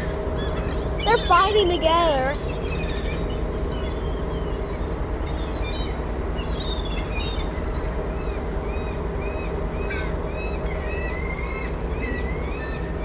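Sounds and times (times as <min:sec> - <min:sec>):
gulls calling: 0:00.4 - 0:02.5.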